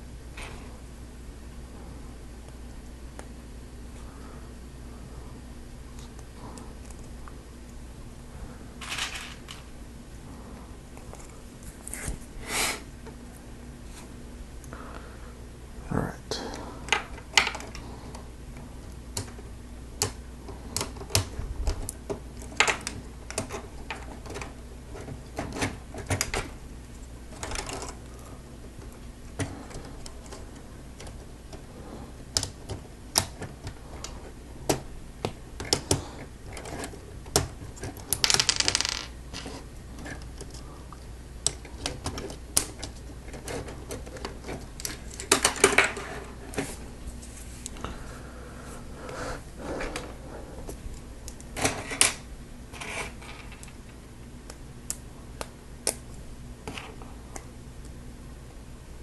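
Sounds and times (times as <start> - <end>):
loose pieces rattling: 8.8 - 9.7, 27.3 - 28.1, 35.7 - 40.6, 51.3 - 53.9
plastic pieces clicking: 32.3 - 40.6.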